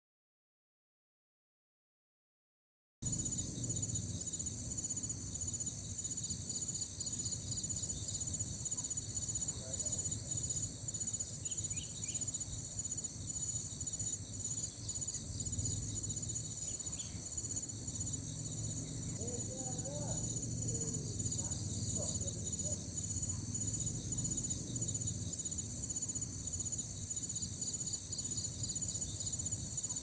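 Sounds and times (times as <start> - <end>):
low outdoor rumble: 3.0 - 5.4, 17.7 - 25.3
crickets and insects chirping: 3.0 - 30.0.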